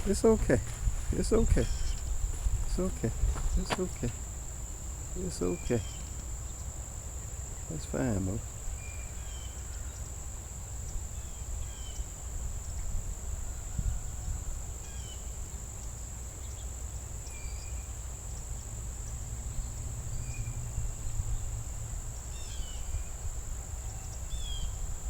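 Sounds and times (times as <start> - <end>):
short insect chirps: 0.0 - 6.7
crickets trilling: 0.0 - 25.0.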